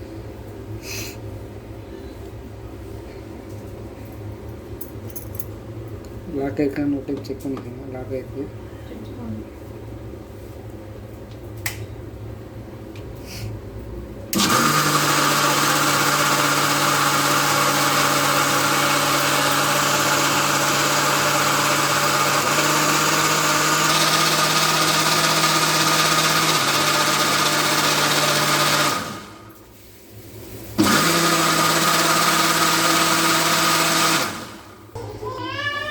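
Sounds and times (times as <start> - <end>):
mixer grinder motor whining: 14.3 - 29.5, 30.8 - 35.0.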